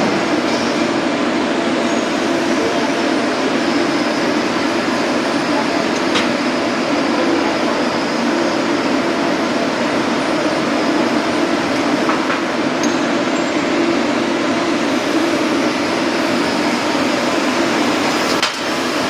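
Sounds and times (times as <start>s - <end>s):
welding arc hissing hum: 0.0s - 19.0s.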